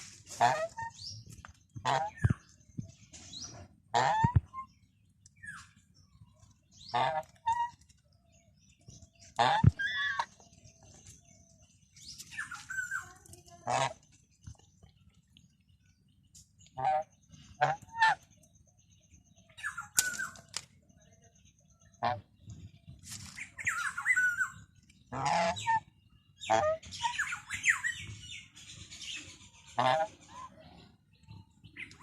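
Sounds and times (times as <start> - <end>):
geese honking: 0.3 - 1.0, 3.9 - 4.6, 9.4 - 10.3, 24.2 - 25.8, 29.8 - 30.5.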